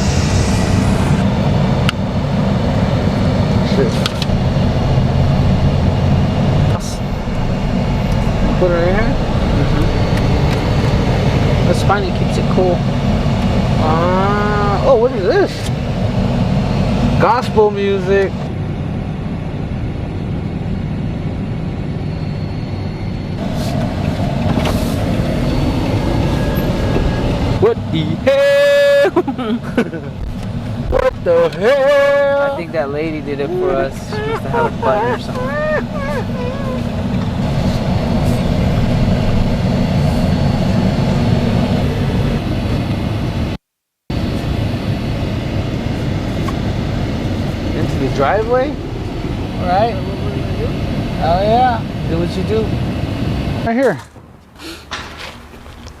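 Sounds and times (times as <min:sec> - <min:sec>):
brief hisses: 0:00.0 - 0:01.3
vehicle rumble from inside: 0:00.0 - 0:28.3, 0:29.0 - 0:53.7.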